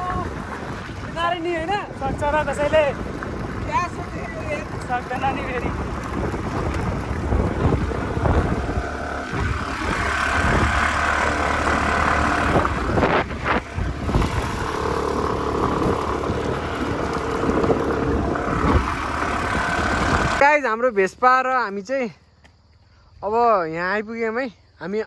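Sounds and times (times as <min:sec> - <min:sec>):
wind noise on microphone: 0:00.0 - 0:20.4
scooter engine running: 0:02.4 - 0:20.4.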